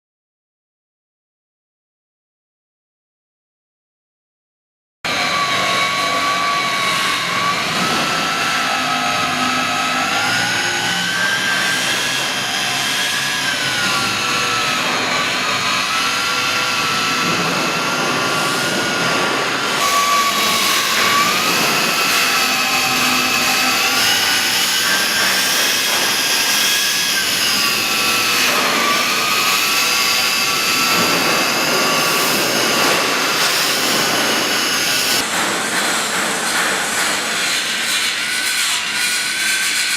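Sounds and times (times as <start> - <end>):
angle grinder motor whine: 5.1 - 35.2.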